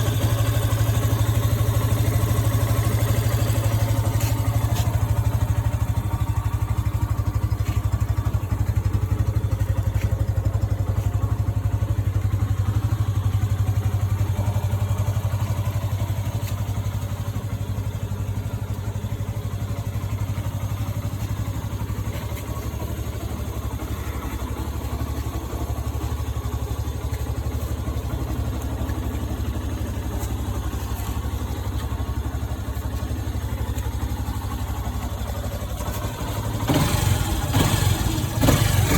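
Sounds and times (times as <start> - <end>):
motorcycle engine idling: 0.0 - 38.9.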